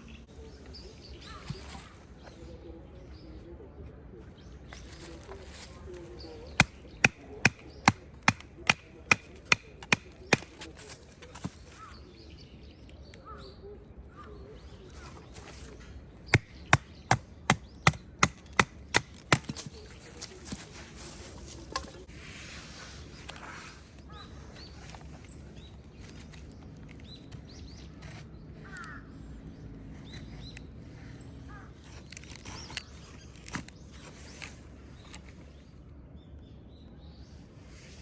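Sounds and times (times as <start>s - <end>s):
firewood being chopped: 6.6s - 11.8s, 16.3s - 20.7s, 21.4s - 22.0s.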